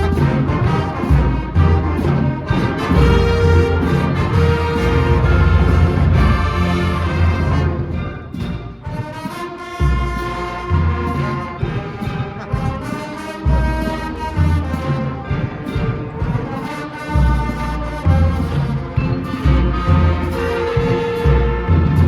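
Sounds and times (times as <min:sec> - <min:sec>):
brass instruments playing chords: 0:00.0 - 0:22.0.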